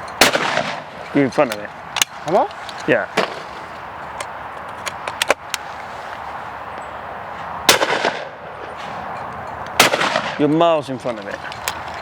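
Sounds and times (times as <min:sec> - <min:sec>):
steady outdoor hiss: 0:00.0 - 0:12.0
shotgun shot with echo: 0:00.2 - 0:00.9, 0:07.7 - 0:08.4, 0:09.8 - 0:10.4.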